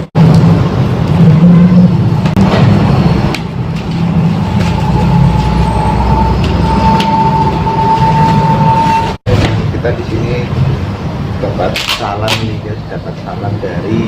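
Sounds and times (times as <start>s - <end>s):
steady high tone: 0.0s - 9.3s.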